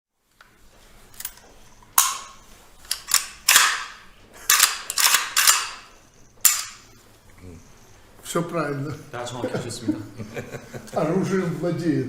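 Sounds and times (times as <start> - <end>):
rifle action metallic clacks: 1.1 - 6.9.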